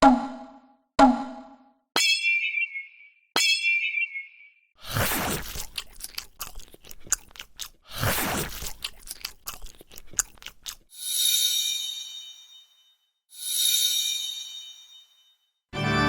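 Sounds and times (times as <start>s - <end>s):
crunchy biting and chewing: 4.8s - 10.9s
bright shimmering chime: 11.0s - 16.0s.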